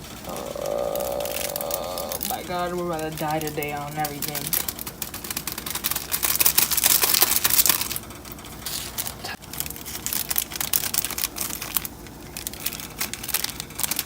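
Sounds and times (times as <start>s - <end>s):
plastic packets crinkling and tearing: 0.1s - 8.0s, 8.6s - 14.0s.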